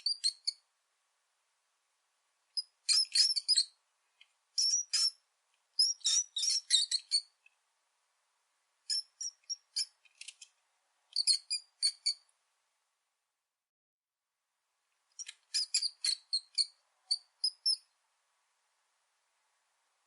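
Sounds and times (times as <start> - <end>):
rat squeaking: 0.0 - 0.6, 2.6 - 3.8, 4.6 - 5.2, 5.8 - 7.4, 8.9 - 10.4, 11.1 - 12.3, 15.2 - 17.9.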